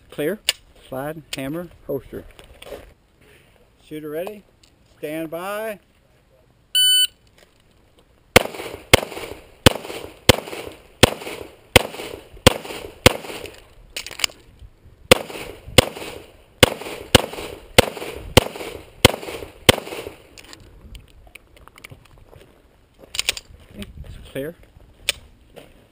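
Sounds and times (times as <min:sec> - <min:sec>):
shot timer beep: 0:06.8 - 0:07.2
rapid pistol shots: 0:08.4 - 0:13.6, 0:15.1 - 0:20.2.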